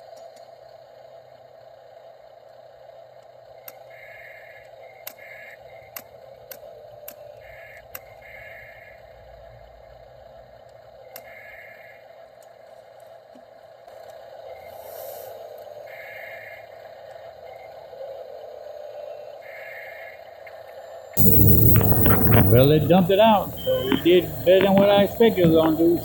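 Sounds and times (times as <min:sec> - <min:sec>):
servo whines: 0:21.2 - 0:26.0
sharp clicks: 0:21.2 - 0:26.0.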